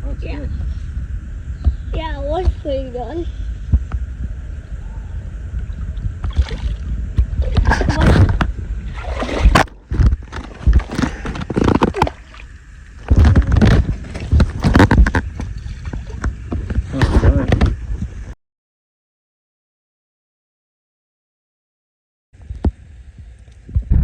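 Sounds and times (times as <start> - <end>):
wind rumbling on microphone: 0.0 - 18.4, 22.4 - 24.0
water sloshing and splashing: 5.6 - 18.2.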